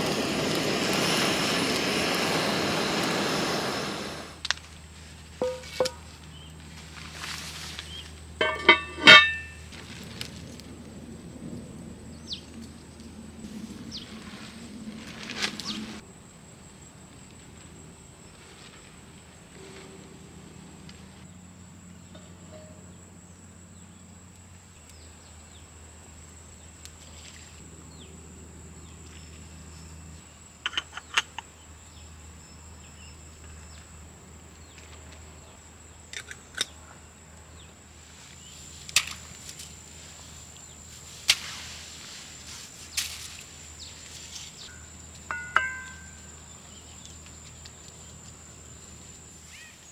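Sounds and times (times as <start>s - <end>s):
insect chirring: 43.0s - 49.9s.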